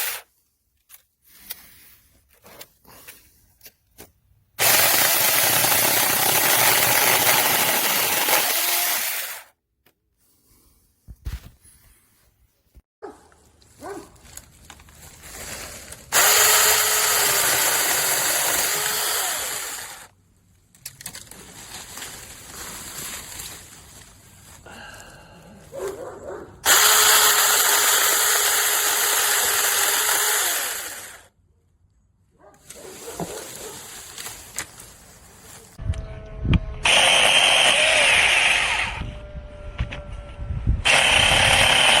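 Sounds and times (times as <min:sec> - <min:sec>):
mini chainsaw whining: 0:04.6 - 0:09.5, 0:16.1 - 0:20.1, 0:26.6 - 0:31.3, 0:36.8 - 0:42.0
handling noises: 0:11.1 - 0:16.2, 0:32.4 - 0:35.8.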